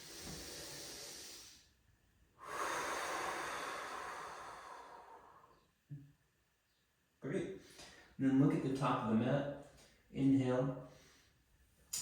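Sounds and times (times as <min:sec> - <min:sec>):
person breathing deeply: 0:00.0 - 0:01.7, 0:02.4 - 0:05.7.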